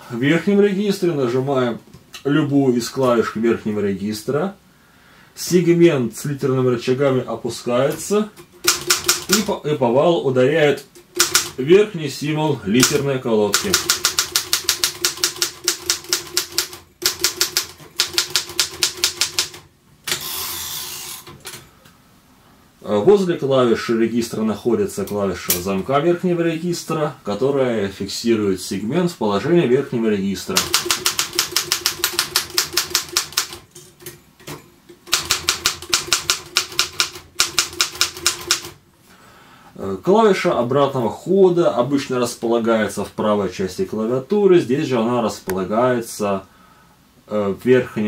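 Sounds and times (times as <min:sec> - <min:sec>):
manual typewriter clacking: 0:07.9 - 0:09.5, 0:11.0 - 0:11.6, 0:12.8 - 0:20.4, 0:30.5 - 0:38.8.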